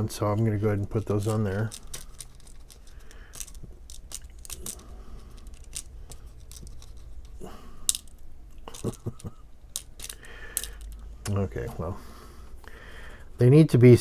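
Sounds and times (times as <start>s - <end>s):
paper pieces clicking and rustling: 0.4s - 11.4s.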